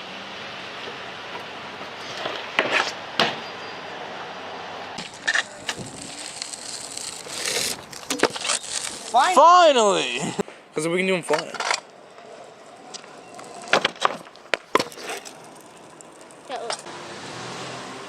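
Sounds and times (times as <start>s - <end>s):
skateboard wheels rolling: 0.0s - 18.0s
wooden skateboard clacks: 11.3s - 16.9s.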